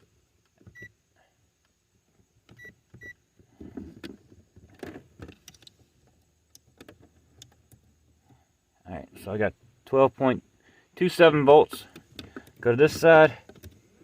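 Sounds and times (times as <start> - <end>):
clicks and rustling handling: 2.4 - 8.4, 11.7 - 14.0.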